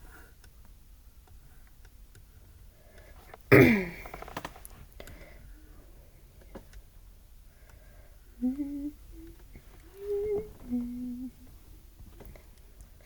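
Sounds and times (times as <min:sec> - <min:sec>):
faint clicks and taps: 0:06.4 - 0:06.9
person humming or grunting: 0:08.4 - 0:11.4.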